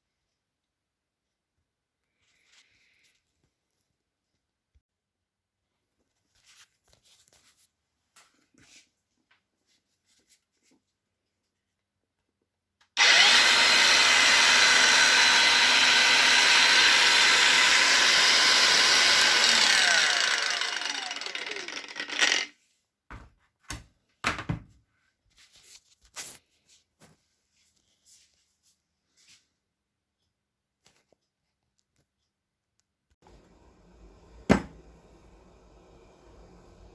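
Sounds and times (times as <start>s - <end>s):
angle grinder motor whine: 13.0s - 22.5s, 33.2s - 36.9s.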